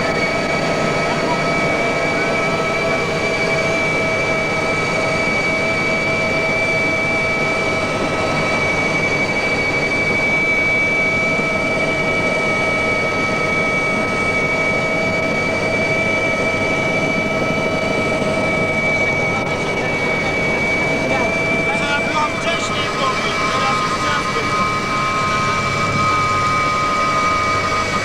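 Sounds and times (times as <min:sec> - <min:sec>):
helicopter engines and rotor: 0:00.0 - 0:28.0
high-pitched whine: 0:17.5 - 0:28.0.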